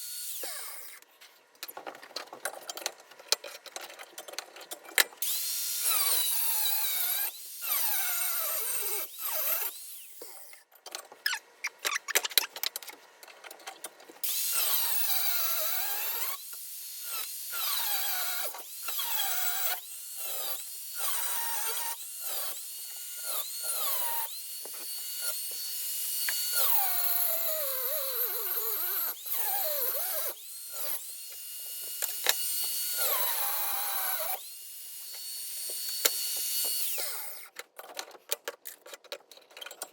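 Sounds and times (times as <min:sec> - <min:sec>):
power tool cutting steel: 0:00.0 - 0:01.0, 0:05.2 - 0:10.6, 0:14.2 - 0:37.5.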